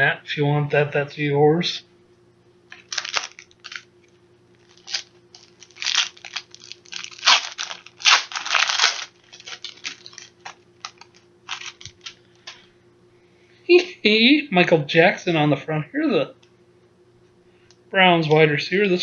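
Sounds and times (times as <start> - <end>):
wrapper tearing and crinkling: 2.7 - 3.9, 4.6 - 12.2.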